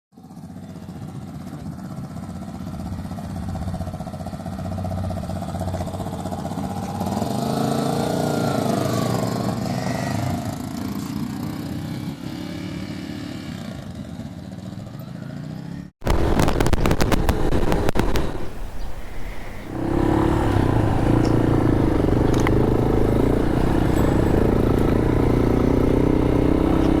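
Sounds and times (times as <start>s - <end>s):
motorcycle engines running: 0.2s - 27.0s
gravel clattering under tyres: 16.0s - 27.0s
wind noise: 16.0s - 27.0s.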